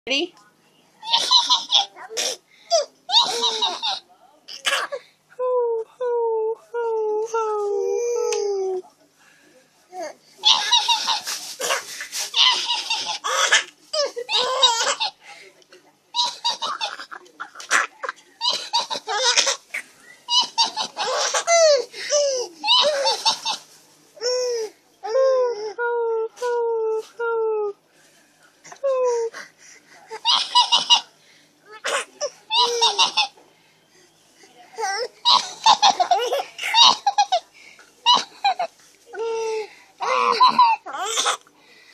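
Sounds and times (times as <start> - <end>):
baby laughing: 1.0 - 2.0, 2.7 - 4.0, 10.4 - 15.2, 16.2 - 19.7, 20.3 - 23.6, 31.7 - 33.4, 34.8 - 37.4, 40.0 - 41.4.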